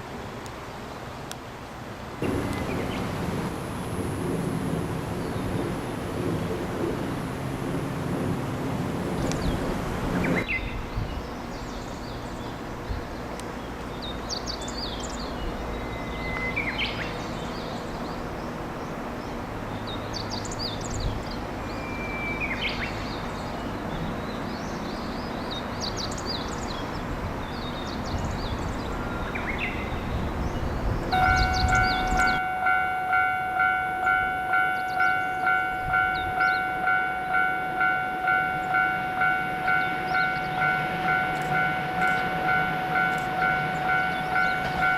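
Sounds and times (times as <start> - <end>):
birds singing: 2.2 - 3.2, 9.0 - 44.9
level crossing warning bell: 31.1 - 44.9.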